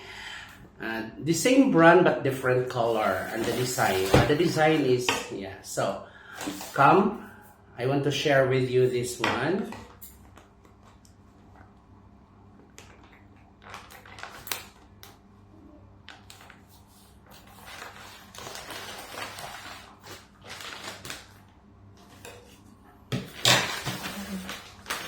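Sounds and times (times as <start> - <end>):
packaging crinkling and clicking: 12.7 - 15.2, 18.3 - 21.4, 23.4 - 25.0.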